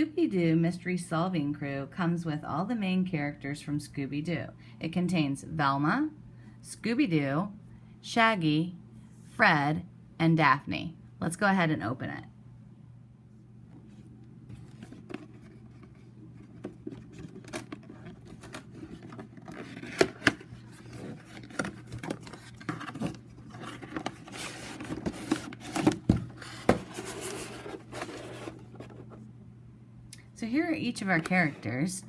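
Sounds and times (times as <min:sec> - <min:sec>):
box tearing and rustling: 0:16.6 - 0:29.0.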